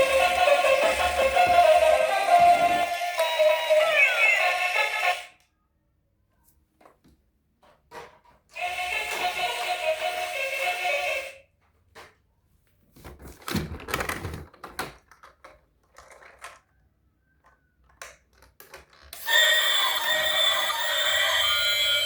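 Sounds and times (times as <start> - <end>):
electronic toy vehicle sound: 0.0 - 5.4, 8.6 - 11.4, 18.8 - 22.0
plastic toys clicking and rattling: 13.2 - 19.7
electronic alarm-like tone: 19.2 - 22.0.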